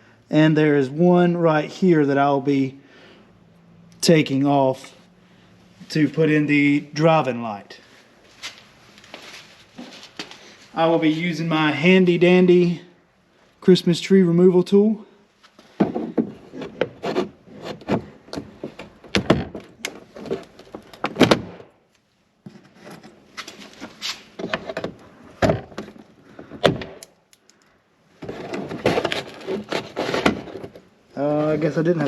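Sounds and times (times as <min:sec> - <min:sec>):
plastic scraping: 0:15.7 - 0:21.2, 0:28.2 - 0:32.0.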